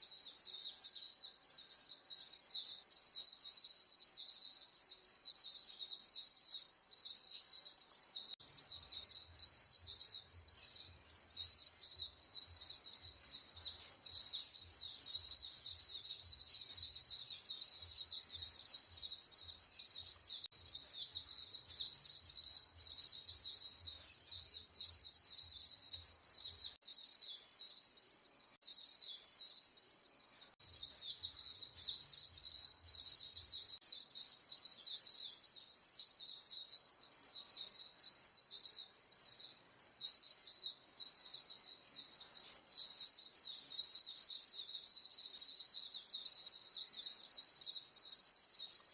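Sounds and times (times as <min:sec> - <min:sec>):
birds chirping rapidly: 0:00.0 - 0:48.9.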